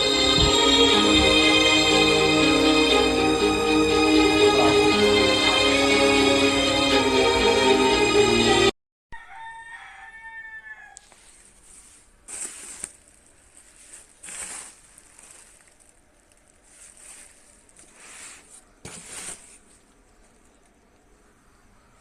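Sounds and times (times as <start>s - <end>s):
rooster crowing: 9.1s - 11.1s.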